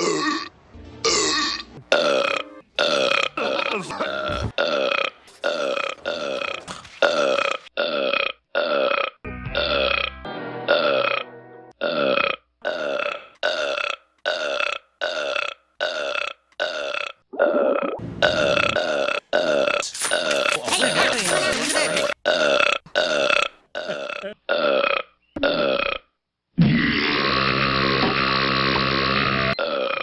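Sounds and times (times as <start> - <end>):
cartoon burps: 0.0 - 27.6, 29.5 - 30.0.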